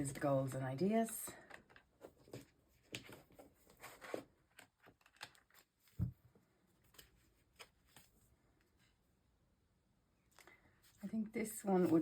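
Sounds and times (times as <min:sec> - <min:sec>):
paper pages rustling: 0:06.8 - 0:08.3.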